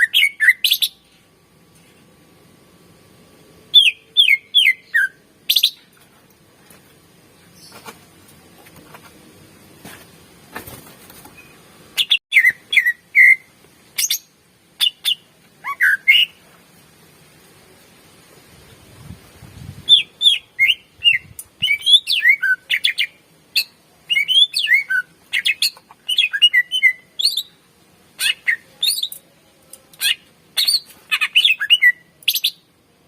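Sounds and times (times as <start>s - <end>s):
bird singing whistled notes: 0.0s - 1.0s, 3.7s - 5.8s, 11.4s - 16.4s, 19.9s - 27.5s, 30.0s - 32.6s.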